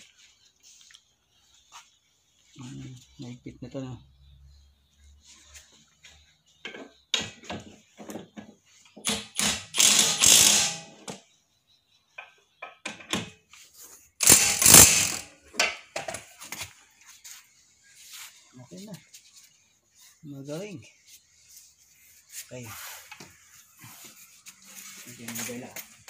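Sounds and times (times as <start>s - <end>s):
ratchet wrench clicking: 9.1s - 10.9s, 14.2s - 15.3s.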